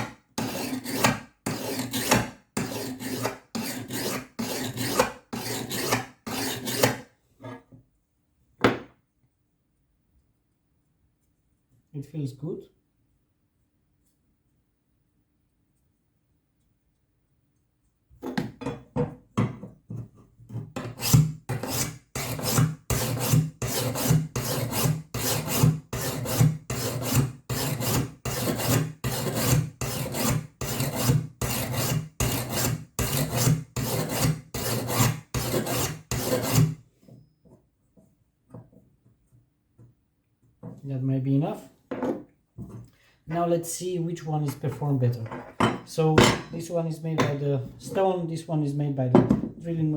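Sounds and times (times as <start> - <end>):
sharpening stone scraping steel: 0.4 - 7.0, 20.8 - 36.8.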